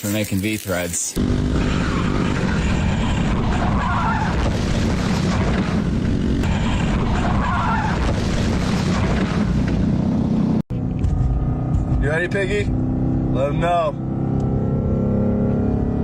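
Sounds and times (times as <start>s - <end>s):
tyres skidding: 0.0s - 12.7s
motor vehicle running: 1.2s - 16.0s.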